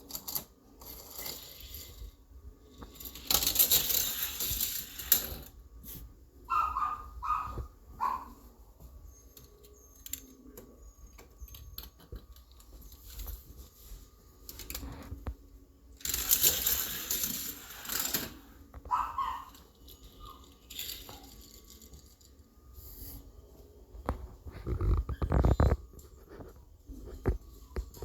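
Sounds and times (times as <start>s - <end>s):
toy cars clattering on plastic track: 0.0s - 5.6s, 16.0s - 22.4s.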